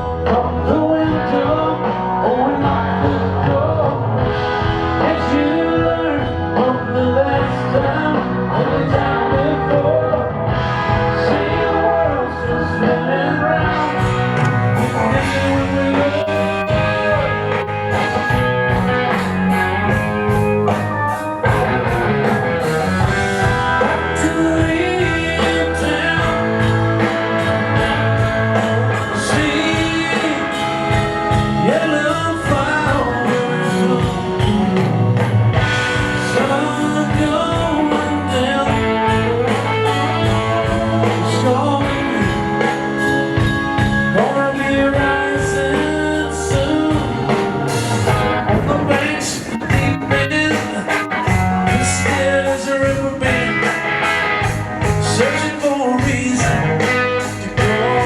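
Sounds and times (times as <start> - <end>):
bass guitar: 0.0 - 58.0
electric guitar with bent notes: 0.0 - 58.0
steady drum beat: 13.6 - 58.0.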